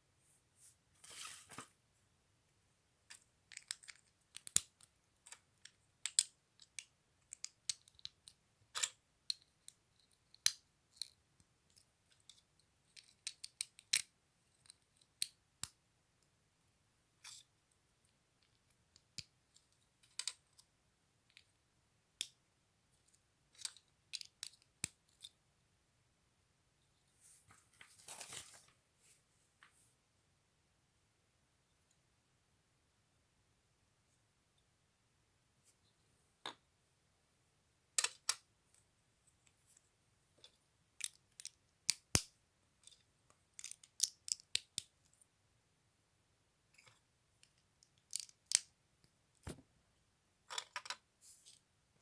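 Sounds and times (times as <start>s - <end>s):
plastic pieces clicking: 3.1s - 9.4s, 41.0s - 43.0s, 43.6s - 44.9s.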